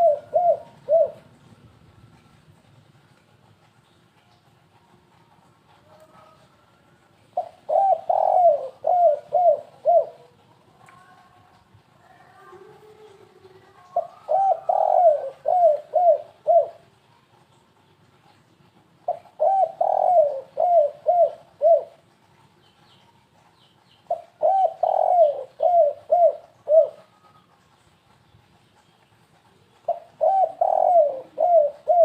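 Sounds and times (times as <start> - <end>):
dove cooing: 0.0 - 1.3, 7.4 - 11.2, 12.3 - 16.9, 19.0 - 22.0, 24.1 - 27.7, 29.5 - 32.0.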